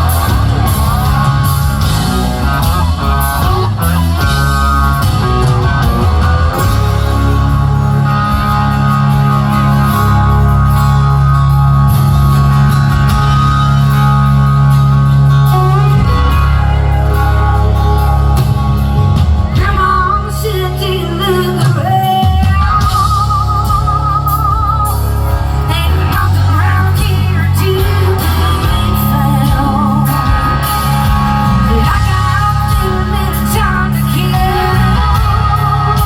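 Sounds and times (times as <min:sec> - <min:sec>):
electric guitar long notes: 0:00.0 - 0:36.0
rock band playing: 0:00.0 - 0:36.0
person singing: 0:19.5 - 0:30.8, 0:31.5 - 0:36.0.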